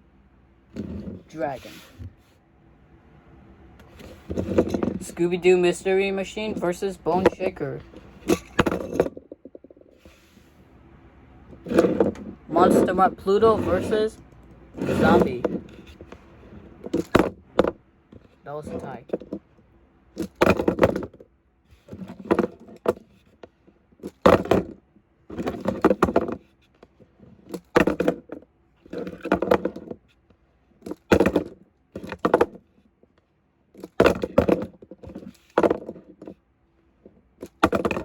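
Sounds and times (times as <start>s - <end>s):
toy trucks clattering on hard surface: 3.8s - 10.1s, 11.5s - 16.2s, 16.8s - 19.4s, 20.2s - 21.2s, 21.8s - 26.5s, 27.4s - 30.1s, 30.8s - 32.8s, 33.7s - 36.4s, 37.4s - 38.0s.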